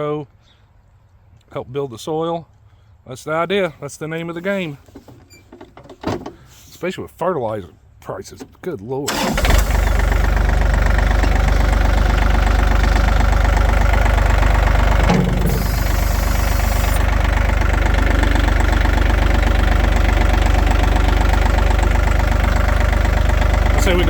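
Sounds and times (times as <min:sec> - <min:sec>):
vehicle engine idling: 0:09.1 - 0:24.0
high hiss: 0:15.4 - 0:17.0.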